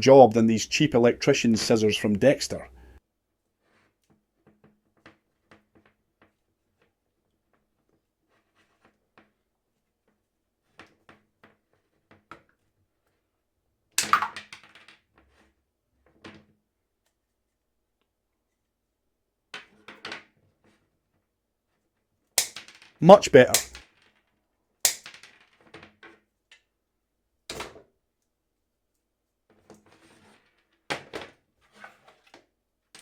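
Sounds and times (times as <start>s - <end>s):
pliers and scissors cutting wire: 23.4s - 23.8s
sharp snap: 23.4s - 23.8s.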